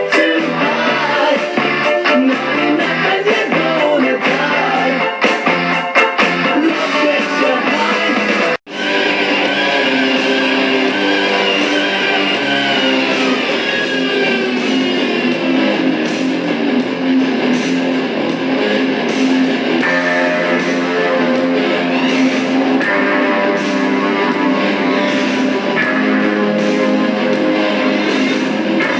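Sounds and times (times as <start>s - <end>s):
guitar music: 0.0s - 28.9s.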